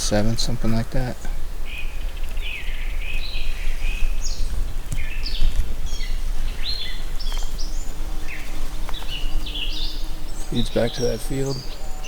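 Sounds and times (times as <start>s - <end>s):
songbirds singing: 0.0s - 12.0s.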